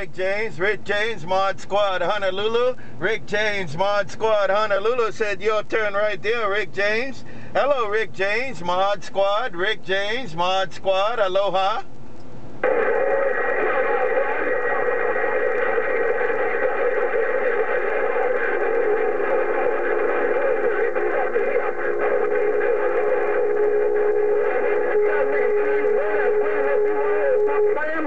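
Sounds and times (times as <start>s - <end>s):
distorted radio voices: 12.6s - 28.0s
radio band noise: 12.6s - 28.0s.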